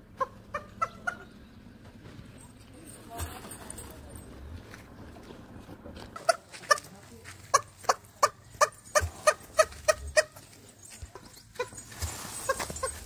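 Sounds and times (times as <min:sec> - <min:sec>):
turkey calling: 0:00.1 - 0:01.4, 0:07.5 - 0:10.4.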